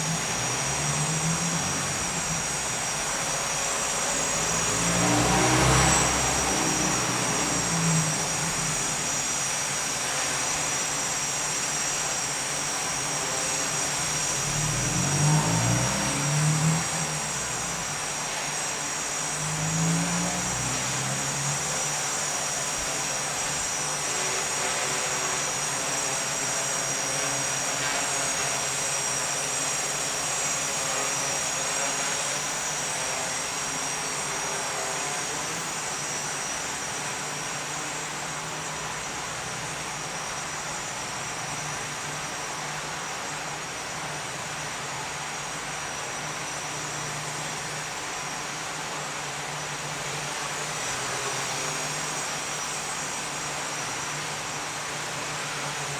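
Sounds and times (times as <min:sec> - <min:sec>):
propeller aircraft engine whine: 0:00.0 - 0:55.9.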